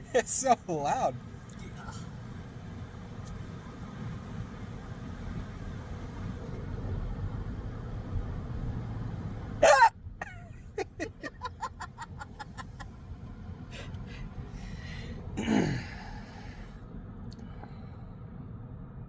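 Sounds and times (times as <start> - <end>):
loud hiccup: 9.6 - 9.9
person giggling: 9.6 - 12.9
breath out: 14.6 - 16.7.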